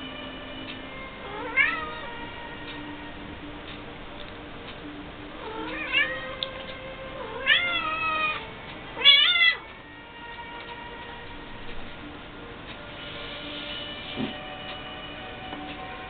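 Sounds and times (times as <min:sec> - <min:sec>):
cat mewling: 0:01.2 - 0:02.6, 0:05.4 - 0:11.0.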